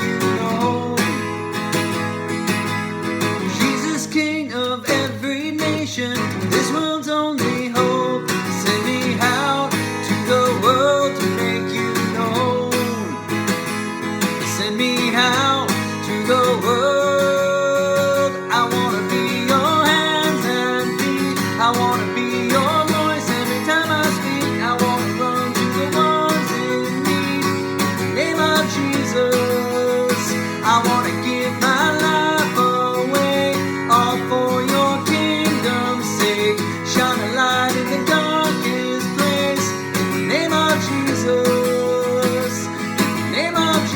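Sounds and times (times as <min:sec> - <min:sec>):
strummed acoustic guitar: 0:00.0 - 0:43.9
worship song: 0:14.6 - 0:43.9.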